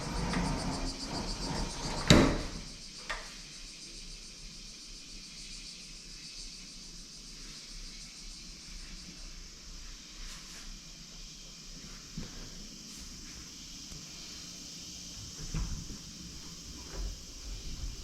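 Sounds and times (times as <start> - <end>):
low rumbling noise: 0.0 - 2.7
faint steady hiss: 1.9 - 18.0.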